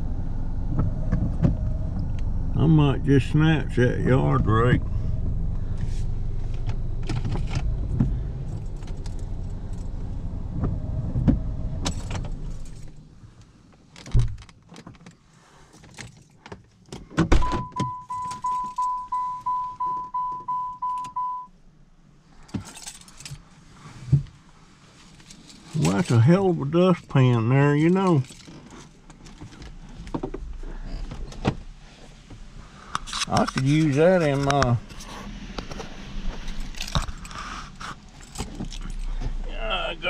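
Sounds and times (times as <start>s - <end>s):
car engine running: 0.0s - 13.4s, 27.3s - 40.0s
car warning chime dinging: 17.4s - 21.5s
keys rattling: 22.6s - 23.4s, 28.0s - 29.7s, 36.4s - 39.2s.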